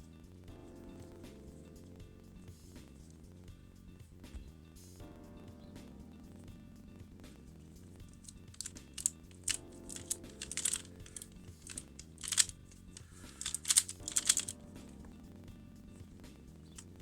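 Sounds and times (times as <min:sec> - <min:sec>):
puzzle cube plastic clicking: 0:08.2 - 0:14.6.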